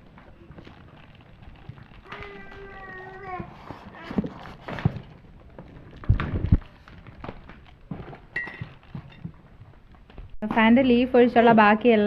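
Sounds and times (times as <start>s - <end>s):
cardboard box and parts being handled: 0.2s - 9.4s.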